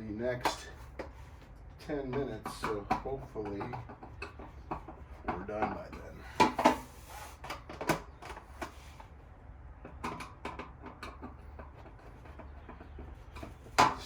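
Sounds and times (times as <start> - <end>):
hand tools clanking on metal: 0.3 - 1.1, 1.8 - 6.9, 9.9 - 14.0.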